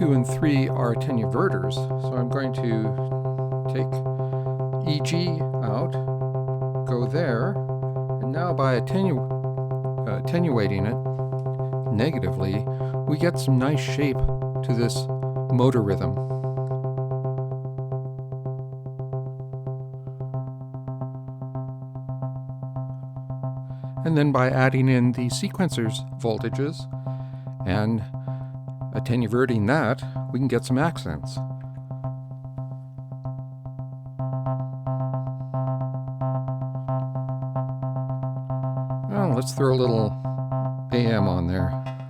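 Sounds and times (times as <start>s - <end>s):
synthesizer pulsing low note: 0.0s - 42.0s.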